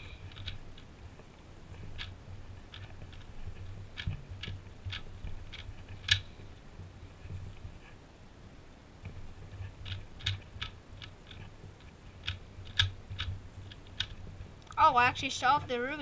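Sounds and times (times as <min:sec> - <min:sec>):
puzzle cube plastic clicks: 0:00.0 - 0:00.9, 0:01.7 - 0:06.3, 0:09.6 - 0:11.5, 0:12.2 - 0:14.2.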